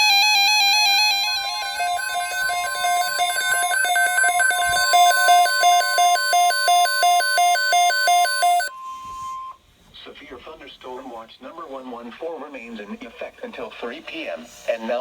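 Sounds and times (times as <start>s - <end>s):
looping electronic tune: 1.0s - 8.7s.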